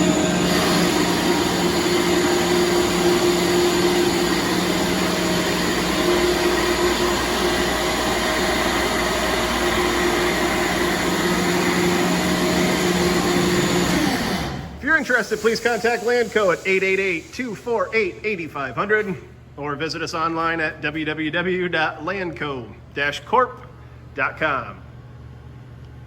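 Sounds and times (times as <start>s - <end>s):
air compressor running: 0.0s - 19.6s.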